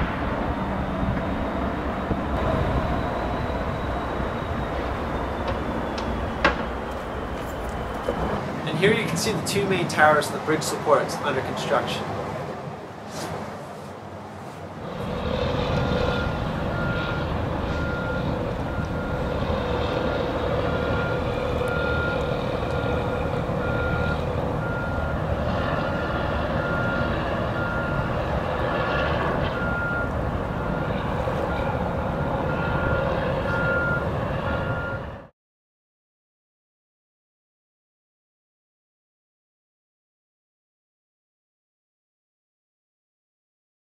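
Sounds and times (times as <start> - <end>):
traffic and machinery rumble: 0.0 - 35.3
vehicle reversing alarm beeps: 0.6 - 9.3, 15.7 - 35.3.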